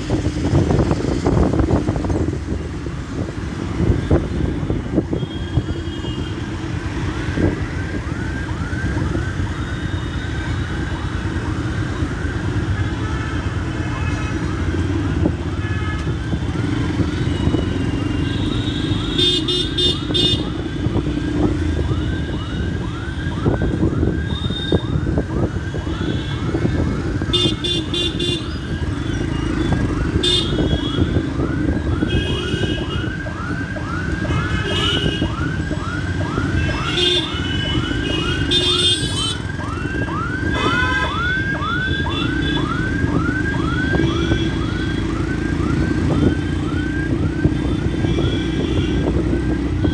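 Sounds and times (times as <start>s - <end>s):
traffic noise: 0.0s - 49.9s
siren yelping: 6.8s - 13.0s, 19.7s - 49.9s.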